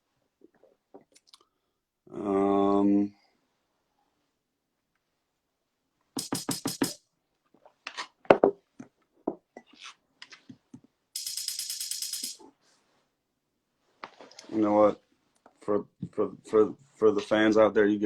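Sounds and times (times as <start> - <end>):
buzzing rattle: 6.2 - 7.0, 11.2 - 12.4
drum machine hits: 6.2 - 7.0, 11.2 - 12.4.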